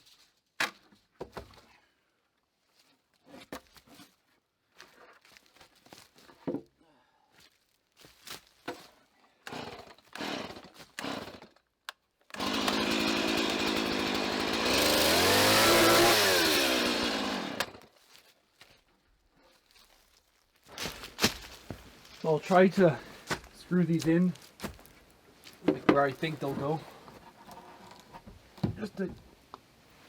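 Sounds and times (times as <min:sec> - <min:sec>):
power saw running: 0:12.4 - 0:17.8
handling knocks and rustles: 0:18.0 - 0:29.2.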